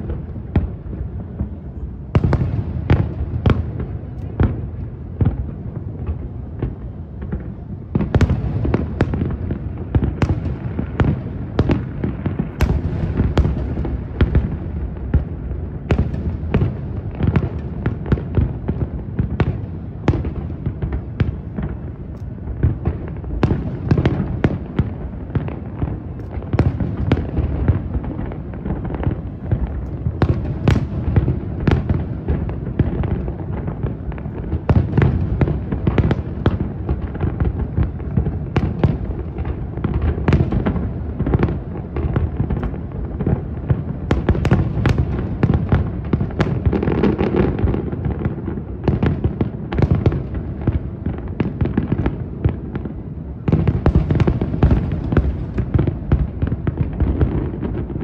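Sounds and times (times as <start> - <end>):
fireworks booms and cracks: 0.0 - 58.0.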